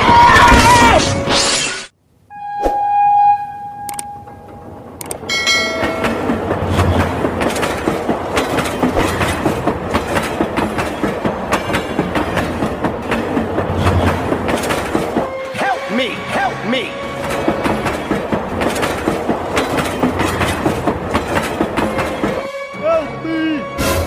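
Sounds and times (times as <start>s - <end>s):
train horn: 2.3s - 4.5s, 21.9s - 24.0s
train clickety-clack on rails: 4.3s - 23.0s.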